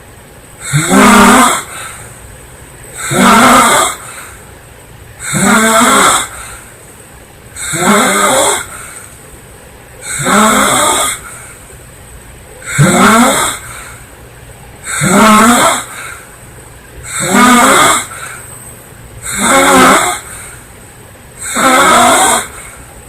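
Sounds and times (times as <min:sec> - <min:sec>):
woman snoring: 0:00.7 - 0:01.9, 0:03.0 - 0:04.0, 0:05.3 - 0:06.4, 0:07.6 - 0:08.7, 0:10.2 - 0:11.2, 0:12.8 - 0:13.6, 0:15.0 - 0:16.0, 0:17.2 - 0:18.3, 0:19.3 - 0:20.3, 0:21.4 - 0:22.7.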